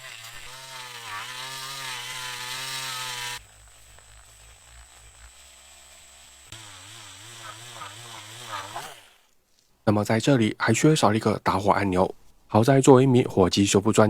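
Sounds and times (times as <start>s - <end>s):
polishing wheel motor whine: 0.0s - 9.0s
low motor hum: 0.0s - 9.2s.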